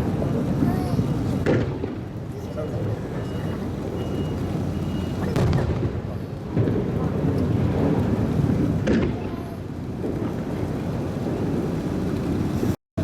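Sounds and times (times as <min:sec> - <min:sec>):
fireworks booming: 0:00.0 - 0:12.8
sharp firework bang: 0:01.4 - 0:02.0, 0:05.2 - 0:09.5.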